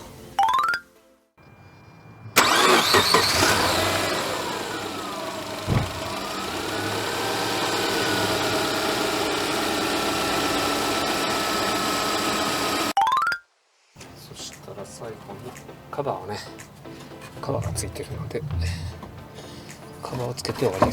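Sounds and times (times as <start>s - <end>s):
car engine starting and idling: 2.0s - 13.0s, 17.5s - 19.7s
short thump: 5.6s - 6.3s, 17.6s - 19.3s.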